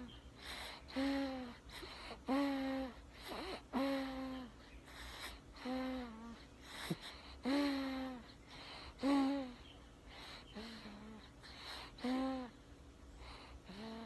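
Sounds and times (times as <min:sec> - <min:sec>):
chick snoring wheeze: 0:13.2 - 0:14.0.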